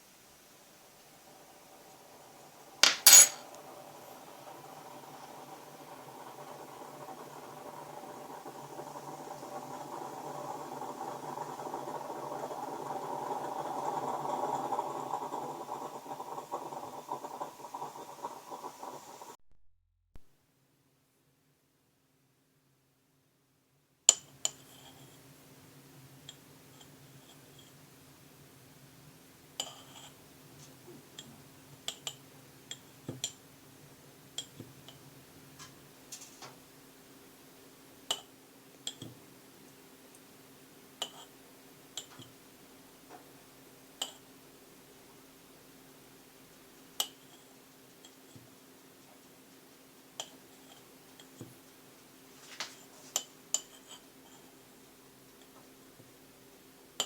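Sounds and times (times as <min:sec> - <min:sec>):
kitchenware clinking: 0:02.8 - 0:03.5.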